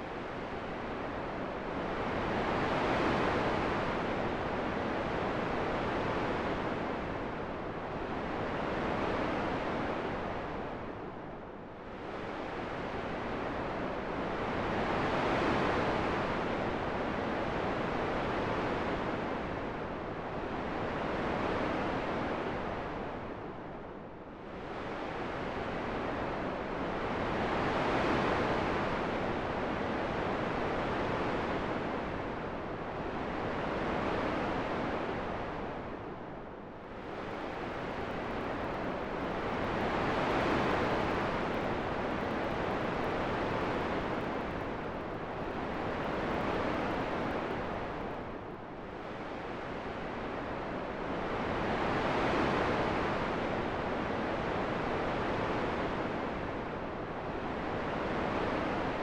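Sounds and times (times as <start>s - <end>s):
rushing wind: 32.8s - 53.4s.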